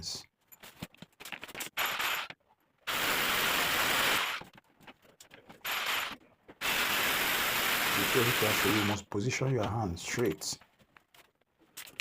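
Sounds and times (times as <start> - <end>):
power drill boring into wall: 2.9 - 4.5, 5.7 - 9.0.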